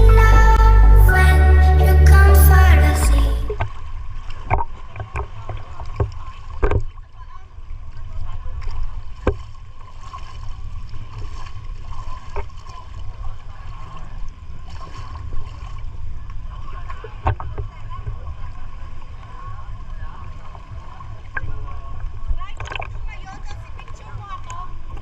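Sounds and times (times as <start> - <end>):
low rumble: 0.0 - 3.9
paddle knocks and splashes: 3.6 - 7.2, 7.9 - 19.3, 20.4 - 25.0.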